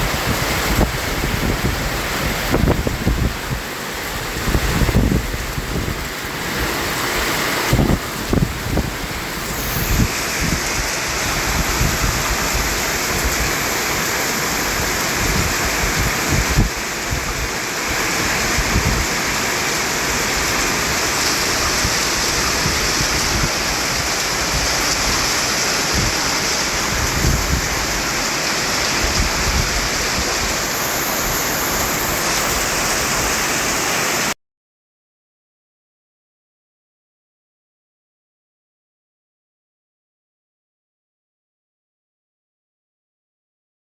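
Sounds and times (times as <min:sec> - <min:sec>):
white noise hiss: 0:06.8 - 0:22.0, 0:29.5 - 0:34.4.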